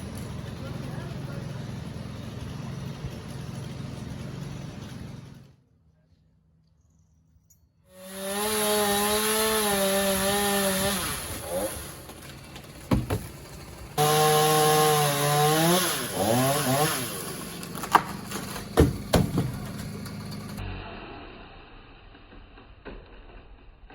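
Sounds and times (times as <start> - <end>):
chainsaw cutting wood: 0.0 - 5.6, 7.9 - 20.6
sharp knocks: 12.9 - 13.7, 17.8 - 20.2.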